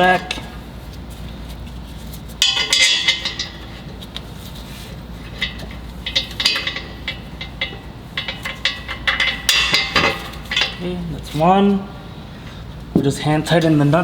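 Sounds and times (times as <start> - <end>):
metal hardware clinking: 2.3 - 4.2, 5.2 - 11.4.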